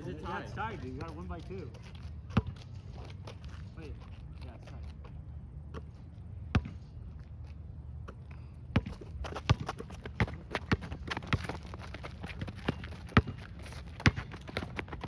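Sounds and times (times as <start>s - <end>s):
basketball bouncing on court: 2.3s - 2.7s, 6.5s - 6.8s, 8.7s - 15.0s.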